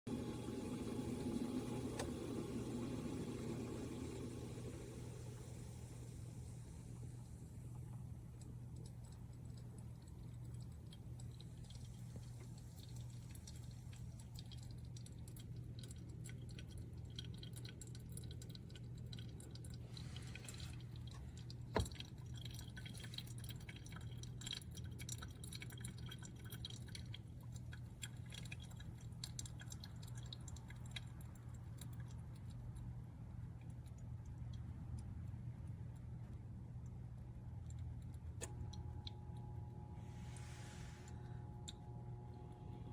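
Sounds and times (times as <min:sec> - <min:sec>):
steady low hum: 0:00.1 - 0:42.9
faint clicks and ticks: 0:06.1 - 0:39.8.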